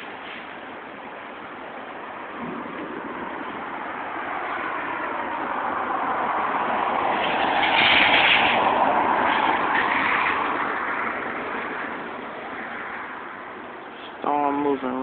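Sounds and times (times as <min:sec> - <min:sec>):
strong wind rushing: 0:00.0 - 0:14.8.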